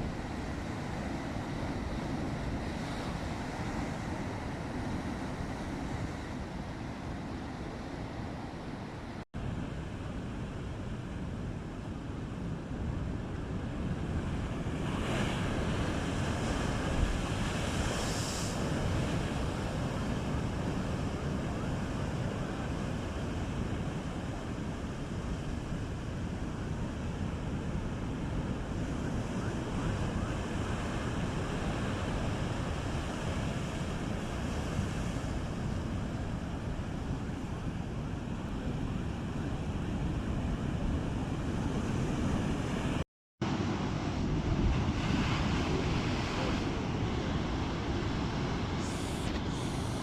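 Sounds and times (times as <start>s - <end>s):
waves surging: 0.0s - 9.2s, 11.6s - 50.0s.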